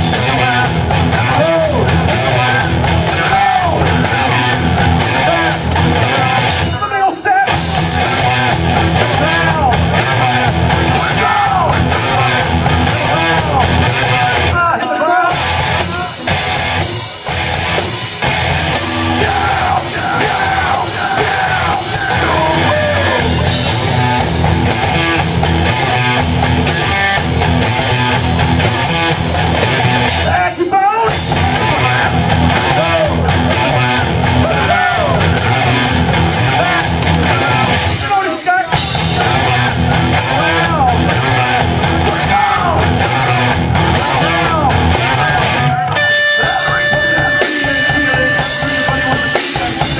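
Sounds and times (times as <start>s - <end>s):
drums: 0.0s - 49.9s
electric guitar: 0.0s - 49.9s
rock band playing: 0.0s - 49.9s
yelled vocals: 0.0s - 49.9s.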